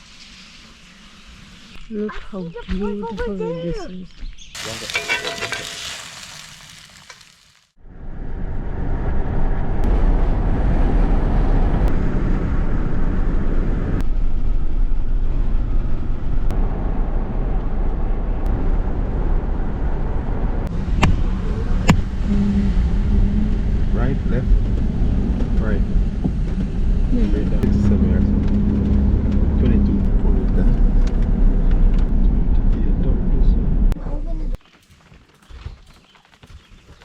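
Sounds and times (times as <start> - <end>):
hiss: 0.0 - 1.8
car engine and road rumble: 7.8 - 37.0.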